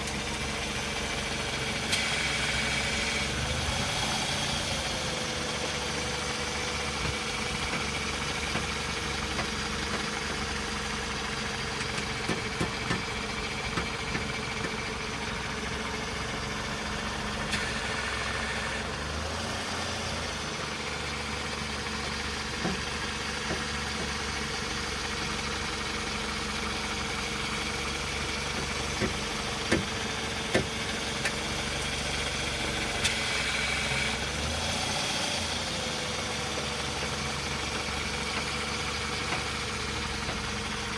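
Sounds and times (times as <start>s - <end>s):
car engine idling: 0.0s - 40.9s
sharp clicks and knocks: 11.8s - 13.1s, 28.5s - 31.4s.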